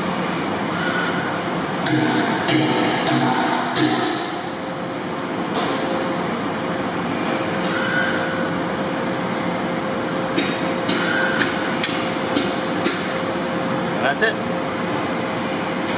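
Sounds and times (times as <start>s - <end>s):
steady mechanical hum: 0.0s - 15.9s
sharp knocks: 1.8s - 4.4s.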